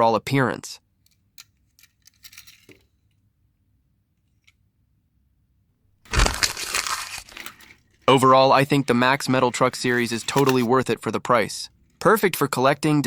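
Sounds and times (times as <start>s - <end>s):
toy trucks clicking and clinking: 1.0s - 3.1s, 6.1s - 12.6s.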